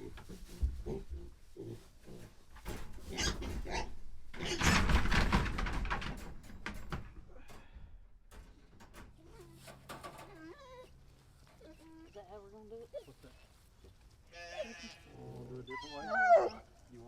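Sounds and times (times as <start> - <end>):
knocks and rattles: 2.1 - 10.4
piglets squealing: 15.6 - 16.6.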